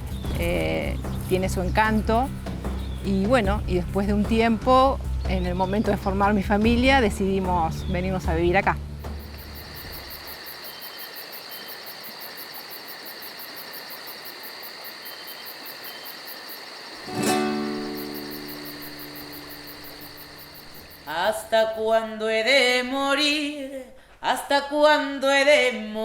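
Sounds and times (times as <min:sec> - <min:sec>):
insect chirring trill: 0:08.9 - 0:21.8
acoustic guitar chord strummed: 0:17.0 - 0:21.2.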